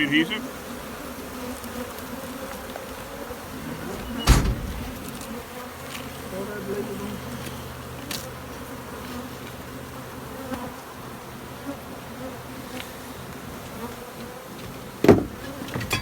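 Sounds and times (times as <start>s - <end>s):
bees buzzing in a swarm: 0.0s - 15.8s
loud knock: 4.0s - 5.3s.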